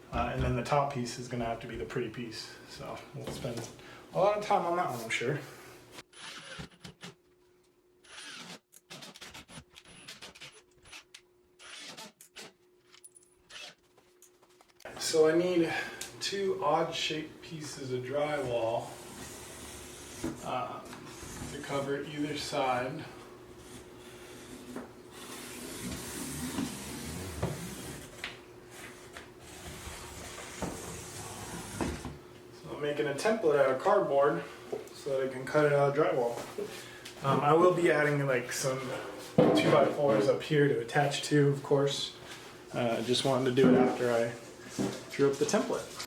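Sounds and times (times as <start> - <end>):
faint steady hum: 0.0 - 6.0, 14.9 - 46.0
drywall scraping and rubbing: 23.6 - 32.2.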